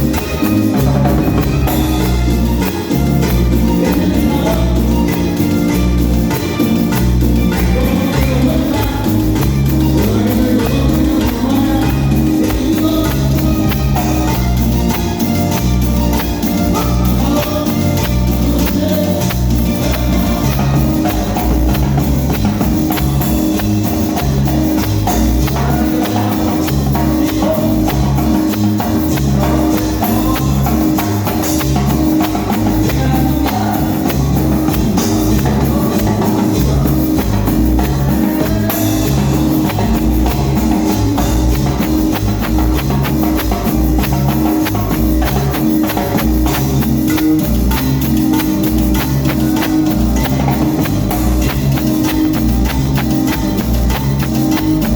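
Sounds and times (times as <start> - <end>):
band music with steady beat: 0.0 - 54.9
drums and percussion: 0.0 - 54.9
repeating bass line: 0.0 - 54.9.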